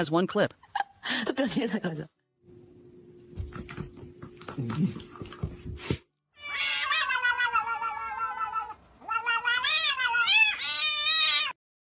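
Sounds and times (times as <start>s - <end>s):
cat yowling: 6.4s - 11.6s.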